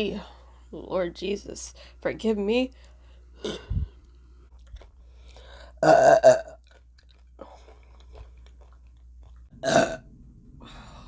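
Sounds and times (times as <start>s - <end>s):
woman burping: 3.4s - 3.8s, 5.8s - 6.6s, 9.6s - 10.0s.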